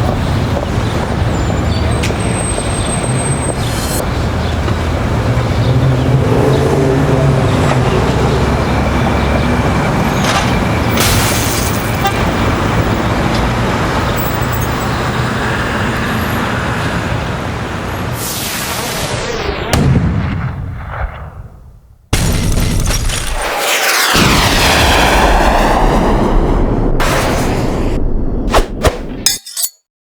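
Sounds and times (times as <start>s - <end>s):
road traffic passing: 0.0s - 18.8s.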